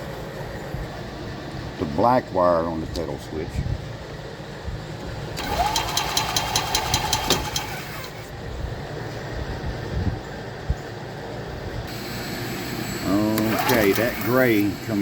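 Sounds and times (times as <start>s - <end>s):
engine cranking on starter: 5.3s - 8.3s, 13.1s - 14.8s.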